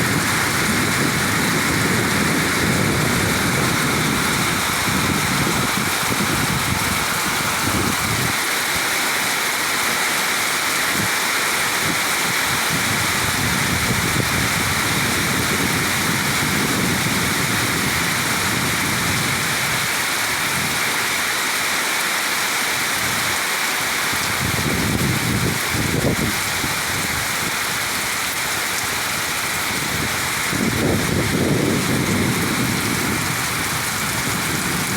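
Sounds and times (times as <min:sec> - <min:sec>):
heavy rain: 0:00.0 - 0:34.9.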